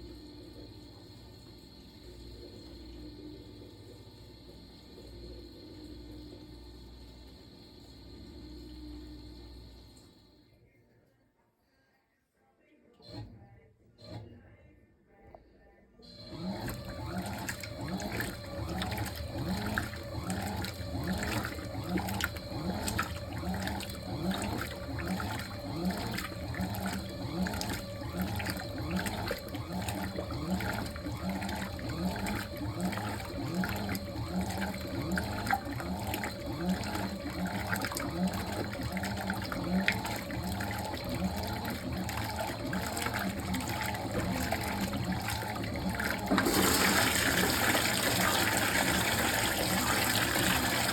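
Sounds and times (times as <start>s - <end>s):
washing machine water pulsing: 0.0s - 10.4s, 16.0s - 50.9s.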